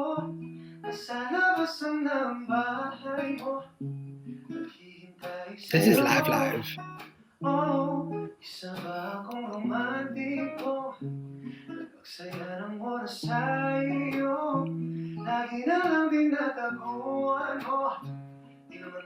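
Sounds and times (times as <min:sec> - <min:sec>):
man singing a ballad: 0:05.3 - 0:06.8, 0:08.5 - 0:11.0, 0:12.0 - 0:14.6
strummed acoustic guitar: 0:05.7 - 0:06.8.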